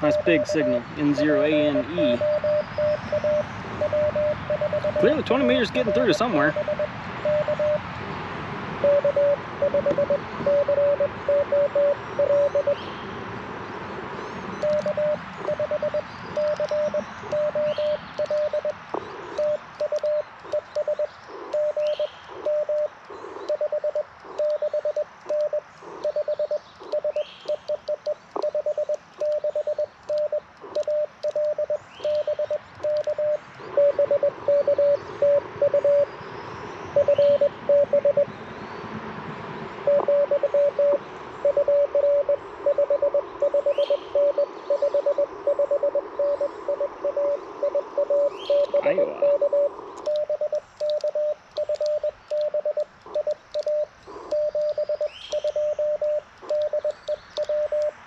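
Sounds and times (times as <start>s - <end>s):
morse code tone: 0.0s - 7.8s, 8.8s - 12.8s, 14.6s - 18.8s, 19.4s - 22.9s, 23.5s - 36.1s, 37.0s - 38.3s, 39.9s - 58.0s
radio band noise hiss: 0.0s - 12.9s, 39.9s - 58.0s.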